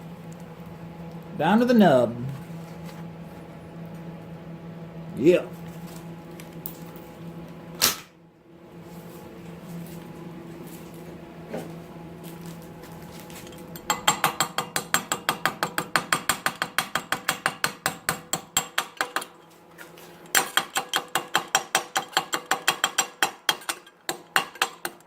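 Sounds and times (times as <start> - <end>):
low steady hum: 0.0 - 20.8
chipping hammer tapping metal: 13.8 - 19.4, 20.3 - 25.0.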